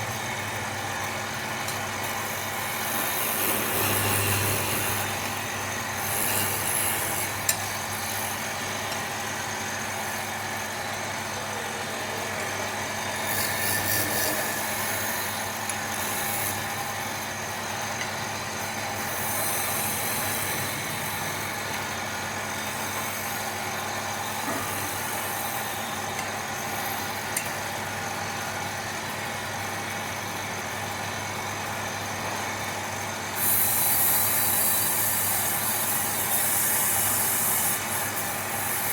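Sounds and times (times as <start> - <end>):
lathe motor humming: 0.0 - 38.9
tool scraping spinning wood: 1.2 - 10.7, 12.3 - 25.9.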